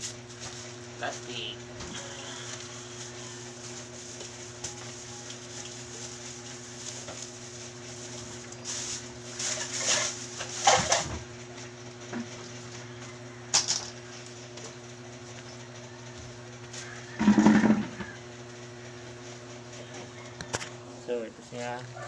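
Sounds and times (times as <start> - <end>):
steady low hum: 0.0 - 22.0
plastic bags rustling: 2.0 - 11.1.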